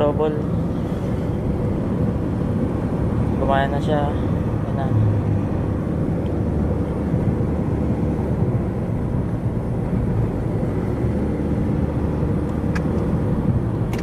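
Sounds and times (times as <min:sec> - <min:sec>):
minivan road and engine noise: 0:00.0 - 0:14.0.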